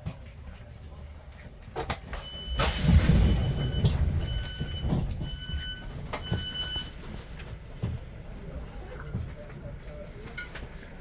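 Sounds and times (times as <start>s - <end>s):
train door warning beeps: 2.1s - 7.2s
train rumble: 2.2s - 11.0s.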